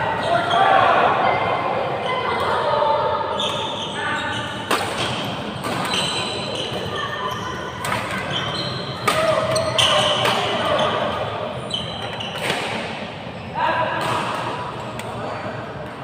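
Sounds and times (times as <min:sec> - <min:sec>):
short high squeaks: 0:05.7 - 0:11.0, 0:11.6 - 0:12.5
sharp knocks echoing in hall: 0:12.3 - 0:15.2.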